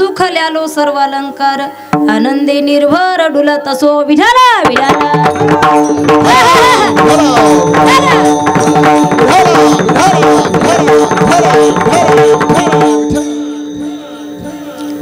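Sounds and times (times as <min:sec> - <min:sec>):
hand drum rhythm: 0:02.0 - 0:02.4, 0:04.5 - 0:15.0.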